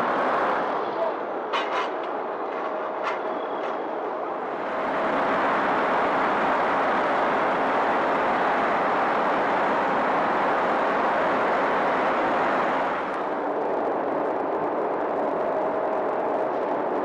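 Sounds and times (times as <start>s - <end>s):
loud rushing roar: 4.4s - 17.0s.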